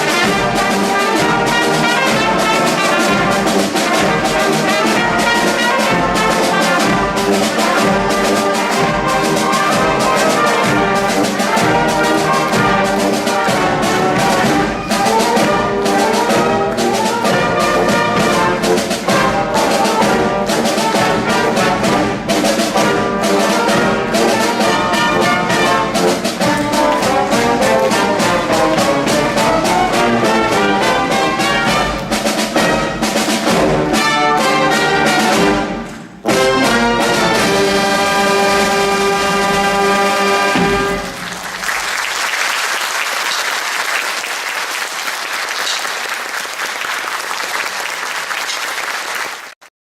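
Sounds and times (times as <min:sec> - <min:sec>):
percussion hits on a beat: 0:00.0 - 0:41.8
trombones and trumpets: 0:00.0 - 0:41.8
wind band playing: 0:00.0 - 0:49.6
audience applauding: 0:39.4 - 0:49.7.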